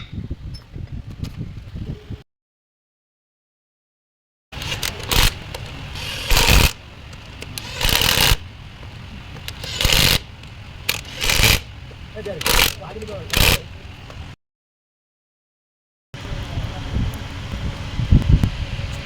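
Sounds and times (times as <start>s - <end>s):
scraping on truck gearbox: 4.6s - 8.4s, 9.3s - 13.7s.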